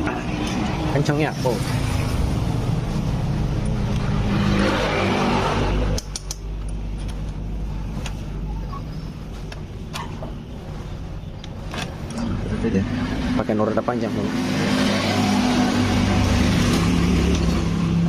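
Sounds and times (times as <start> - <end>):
tools clicking on metal: 5.9 - 7.4.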